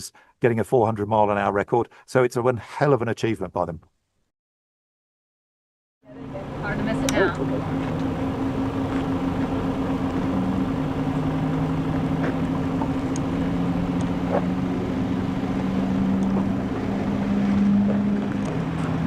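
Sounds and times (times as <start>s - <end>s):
car engine running: 6.1s - 19.0s.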